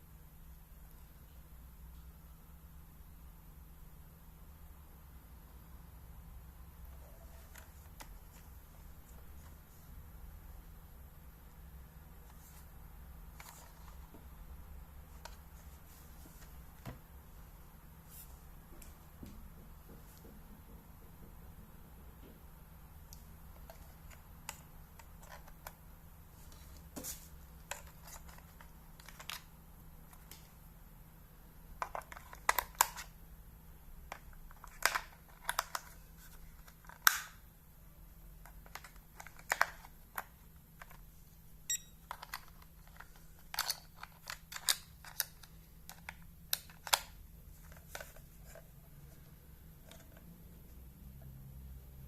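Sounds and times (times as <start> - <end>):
alarm clock beep: 41.7 - 42.0.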